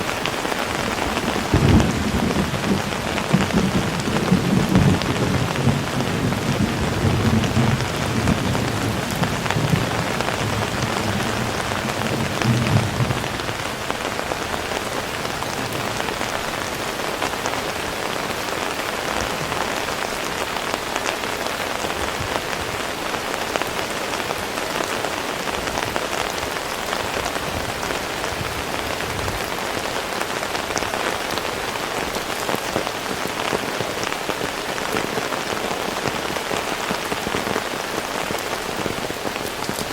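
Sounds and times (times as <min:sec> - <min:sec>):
heavy rain falling: 0:00.0 - 0:39.9
low rumble of thunder: 0:00.9 - 0:16.2.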